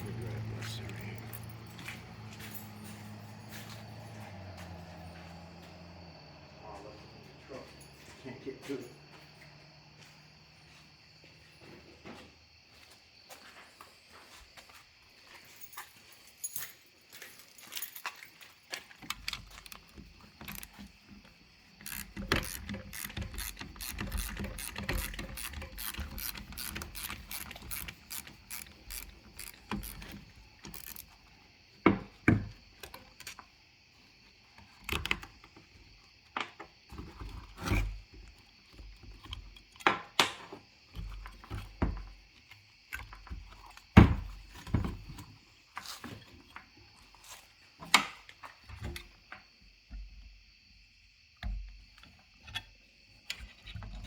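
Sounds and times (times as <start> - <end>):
hand tools clicking on metal: 21.8 - 31.2.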